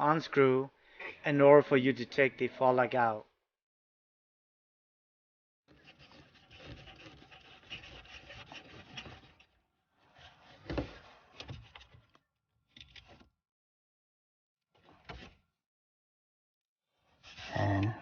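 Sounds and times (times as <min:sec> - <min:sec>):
screwdriver scraping against plastic: 0:05.7 - 0:12.1.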